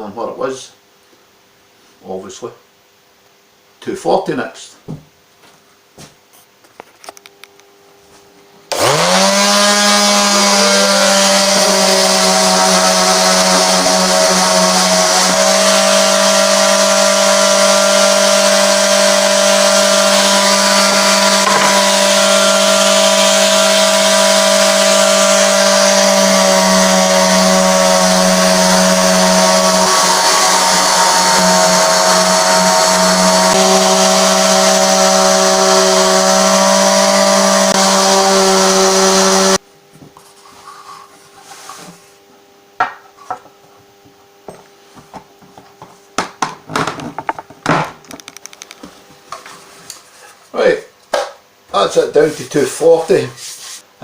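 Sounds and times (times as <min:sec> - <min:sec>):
electric sander sanding wood: 0:08.7 - 0:39.6.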